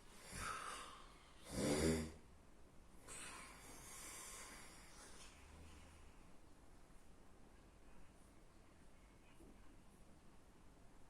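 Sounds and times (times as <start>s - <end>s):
breathy hiss of breath: 0.0s - 2.2s, 3.1s - 5.2s
person snoring: 0.2s - 2.2s.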